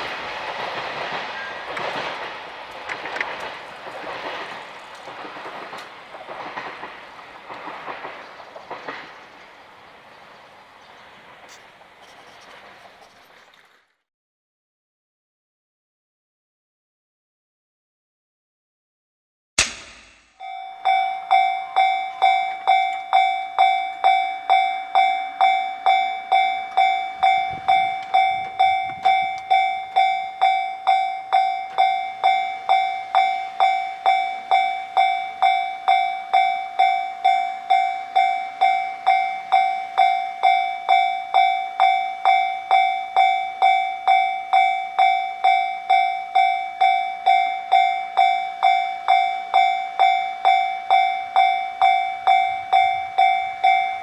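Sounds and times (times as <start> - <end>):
level crossing alarm ringing: 20.3 - 54.0.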